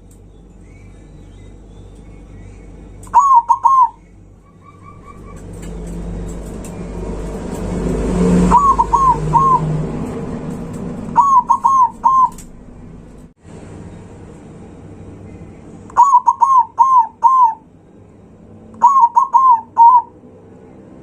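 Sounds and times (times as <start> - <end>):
low vehicle rumble: 0.0 - 21.0
dove cooing: 3.0 - 10.2, 11.0 - 12.5, 15.9 - 17.6, 18.8 - 20.2.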